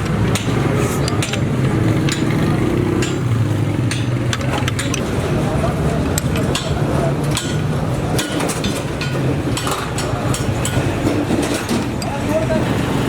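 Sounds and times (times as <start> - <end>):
metallic clicks and taps: 3.9 - 5.1.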